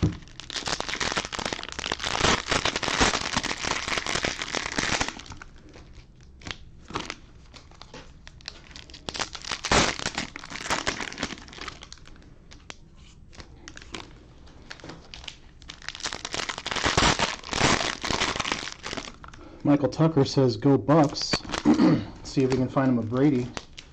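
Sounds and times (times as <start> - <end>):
plastic wrapper crinkling: 0.0 - 19.5, 21.0 - 23.9.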